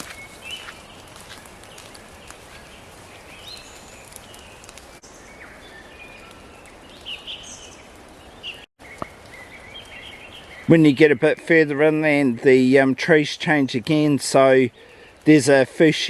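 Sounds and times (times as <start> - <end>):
footsteps on track: 0.0 - 4.3
small birds chirping: 0.0 - 11.4, 14.6 - 15.4.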